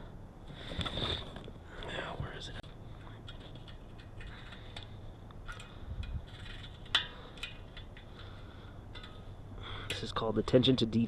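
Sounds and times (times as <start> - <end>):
hand tools clicking and scraping: 2.9 - 10.2.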